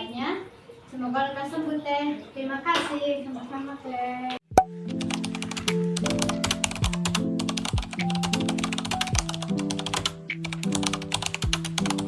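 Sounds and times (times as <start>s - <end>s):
low beat: 4.5s - 4.8s
rapid clicky ticking: 5.0s - 12.0s.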